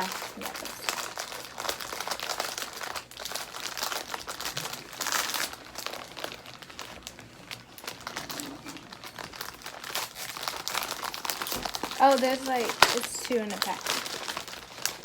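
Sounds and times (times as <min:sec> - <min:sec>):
plastic wrapper crackling: 0:00.0 - 0:15.0.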